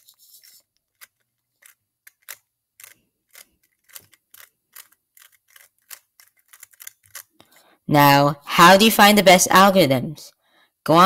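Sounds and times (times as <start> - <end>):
puzzle cube clicking: 0.8 - 7.4.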